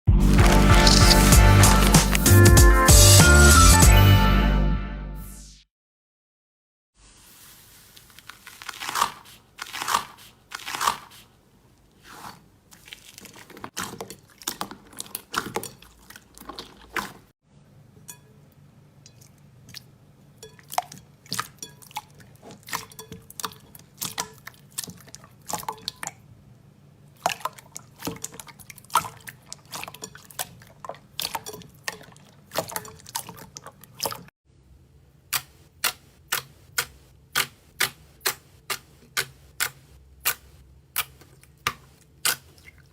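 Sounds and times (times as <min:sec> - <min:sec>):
slime crackling and squishing: 0:00.2 - 0:02.3, 0:07.2 - 0:11.3, 0:12.0 - 0:17.3.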